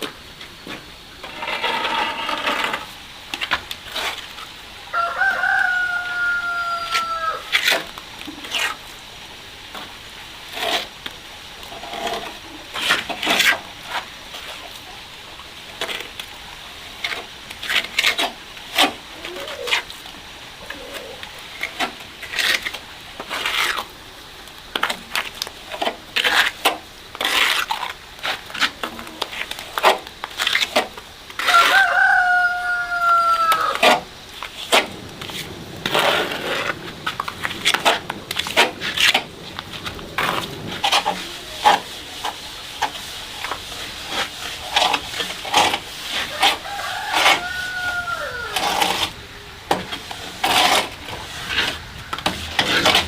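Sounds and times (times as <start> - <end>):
scraping and knocking strokes: 0.0 - 4.4, 33.4 - 53.0
rooster crowing: 4.9 - 7.5, 31.4 - 33.9, 46.2 - 49.1.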